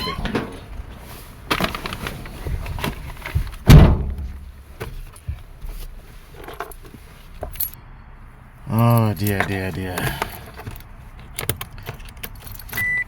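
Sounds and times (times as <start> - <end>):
handling knocks and thuds: 0.2 - 7.6
car door slamming: 3.6 - 4.6.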